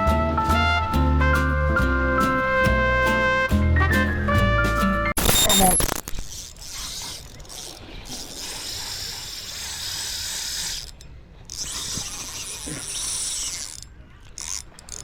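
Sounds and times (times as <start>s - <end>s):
fishing reel whirring: 6.0s - 15.0s.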